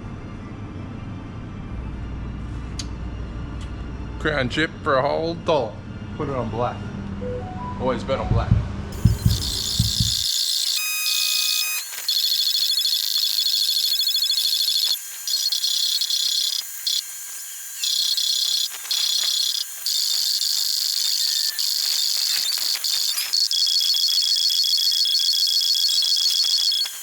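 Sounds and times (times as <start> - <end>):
steady electronic tones: 7.2 - 27.0
electronic beeping and jingling: 8.9 - 27.0.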